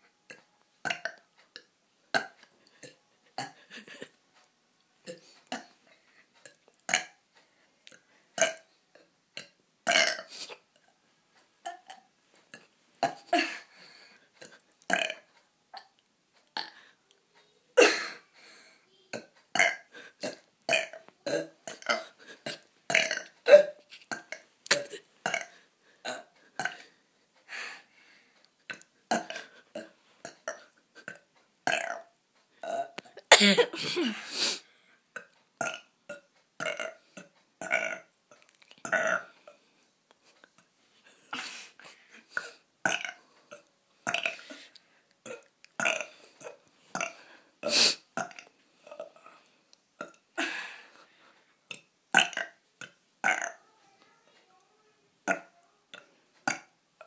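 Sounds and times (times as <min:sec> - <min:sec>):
person burping: 0:00.3 - 0:01.2, 0:02.1 - 0:04.1, 0:05.0 - 0:05.8, 0:06.4 - 0:07.2, 0:08.4 - 0:10.4, 0:11.6 - 0:13.7, 0:14.4 - 0:15.9, 0:16.6 - 0:16.8, 0:19.1 - 0:26.9, 0:28.7 - 0:34.3, 0:35.1 - 0:38.1, 0:38.8 - 0:39.4, 0:42.3 - 0:44.6, 0:45.2 - 0:49.4, 0:50.0 - 0:50.8, 0:51.7 - 0:53.6, 0:55.2 - 0:56.7.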